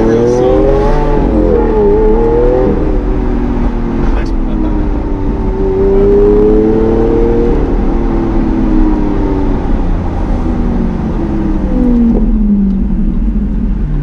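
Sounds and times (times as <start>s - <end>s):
car engine while driving: 0.0s - 14.0s.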